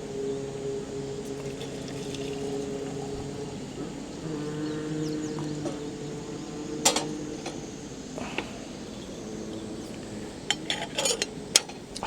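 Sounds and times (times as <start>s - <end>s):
cookware and utensils clinking: 10.4s - 12.0s.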